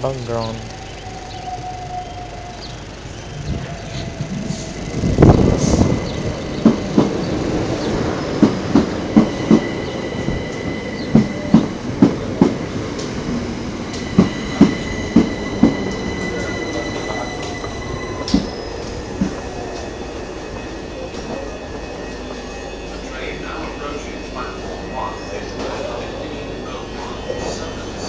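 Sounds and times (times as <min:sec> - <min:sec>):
train rumble: 0:00.0 - 0:28.0
high-pitched wheel squeal: 0:00.5 - 0:12.0, 0:12.6 - 0:28.0
train wheels knocking over rail joints: 0:03.5 - 0:19.9.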